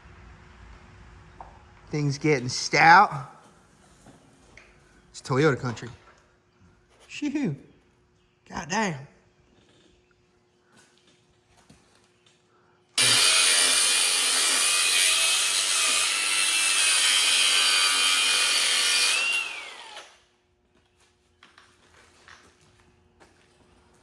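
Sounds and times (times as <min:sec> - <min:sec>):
power tool high whine: 0:13.0 - 0:20.2.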